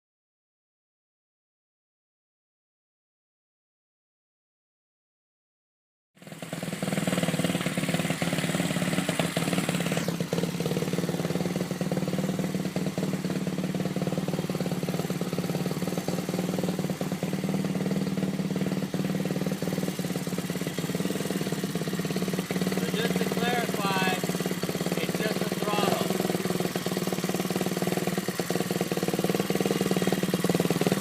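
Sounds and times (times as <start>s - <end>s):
small engine idling: 6.2s - 31.0s.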